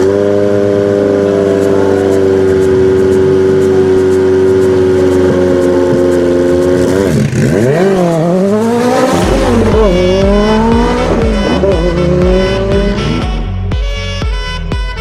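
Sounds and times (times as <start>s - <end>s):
racing car engine revving: 0.0s - 13.5s
music with steady beat: 9.0s - 15.0s.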